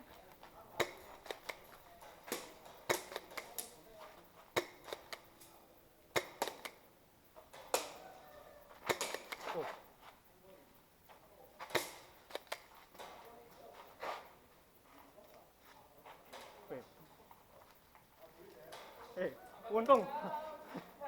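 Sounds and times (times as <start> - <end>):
spring airsoft guns firing: 0.8 - 5.5, 6.1 - 6.9, 7.5 - 9.7, 11.6 - 13.2.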